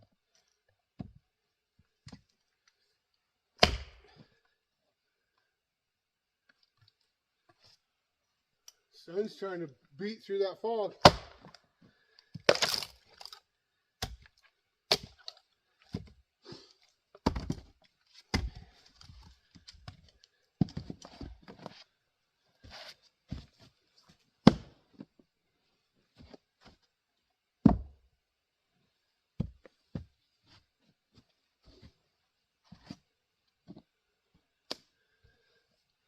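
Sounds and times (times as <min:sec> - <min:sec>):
axe chopping firewood: 0:03.6 - 0:04.2, 0:11.0 - 0:11.6, 0:12.3 - 0:13.3, 0:14.0 - 0:14.3, 0:14.9 - 0:15.3, 0:17.2 - 0:17.7, 0:18.3 - 0:18.6, 0:24.4 - 0:24.8.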